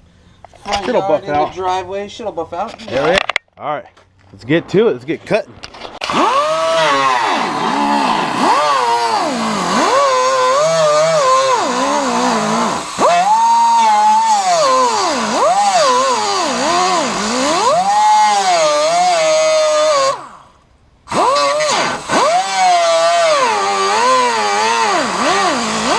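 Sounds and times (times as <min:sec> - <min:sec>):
power tool cutting sheet metal: 0:06.0 - 0:20.4, 0:21.1 - 0:25.9.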